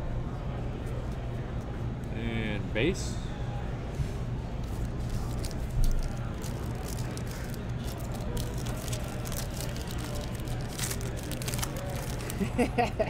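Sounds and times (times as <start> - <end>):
steady low hum: 0.0 - 13.0
cards rustling and clicking: 4.6 - 12.6.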